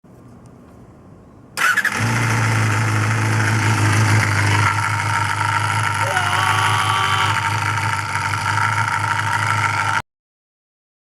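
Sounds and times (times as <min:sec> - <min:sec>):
engine idling: 0:01.6 - 0:10.0.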